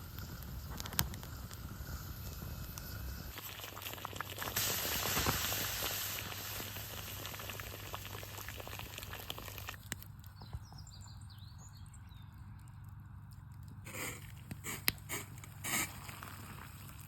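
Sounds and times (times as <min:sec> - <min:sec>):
hiss with crackles: 0:00.0 - 0:09.8, 0:13.9 - 0:17.0.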